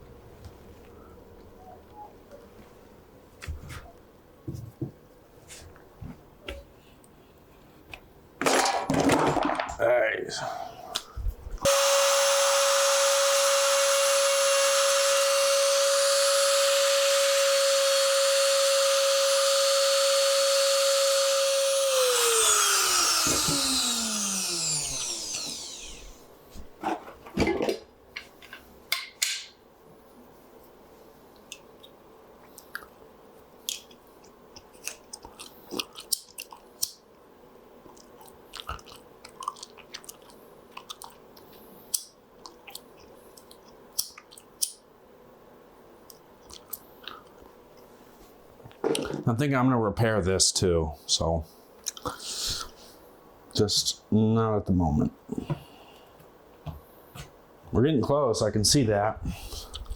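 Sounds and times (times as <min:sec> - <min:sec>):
rotary tool grinding wood: 0:11.6 - 0:26.2.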